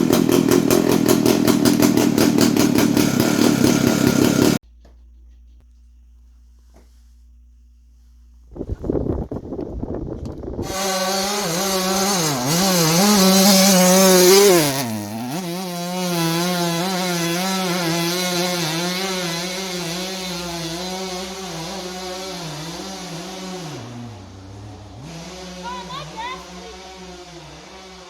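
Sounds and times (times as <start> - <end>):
chainsaw running at high revs: 0.0 - 4.6, 10.6 - 28.0.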